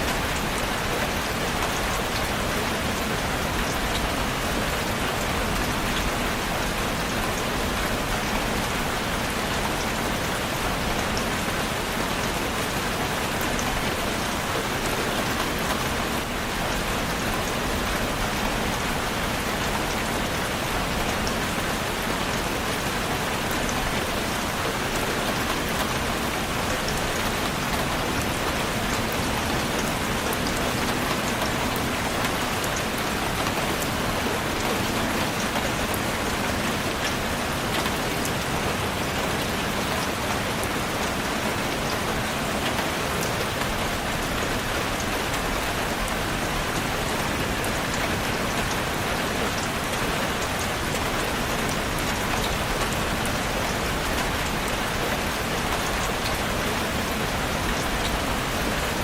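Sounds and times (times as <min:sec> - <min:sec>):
steady rainfall: 0:00.0 - 0:59.0.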